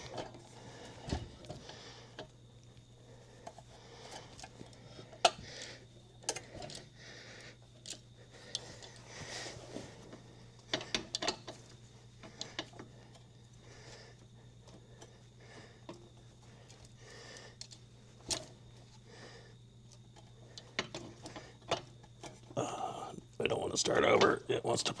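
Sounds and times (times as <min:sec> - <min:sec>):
steady low hum: 0:00.0 - 0:25.0
metallic clicks and knocks of tools: 0:10.7 - 0:11.6.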